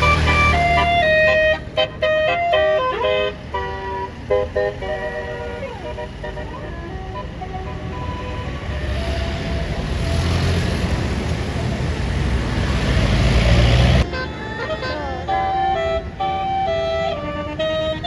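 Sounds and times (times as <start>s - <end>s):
bus air horn tune: 0.0s - 10.4s, 14.0s - 18.0s
bus engine low rumble: 0.0s - 18.0s
road noise: 0.0s - 18.0s.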